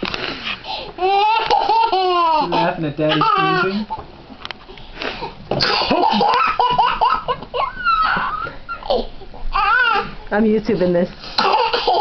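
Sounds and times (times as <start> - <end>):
toddler laughing hysterically: 1.0 - 4.0, 5.6 - 10.1, 11.4 - 12.0.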